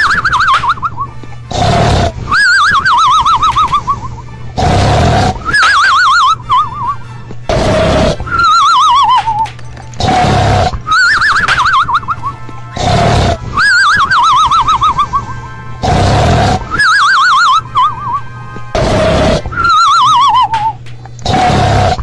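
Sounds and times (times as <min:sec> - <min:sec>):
snoring snort and whistle: 0:01.5 - 0:04.0, 0:04.6 - 0:06.9, 0:07.5 - 0:12.1, 0:12.8 - 0:15.2, 0:15.8 - 0:18.2, 0:18.8 - 0:22.0.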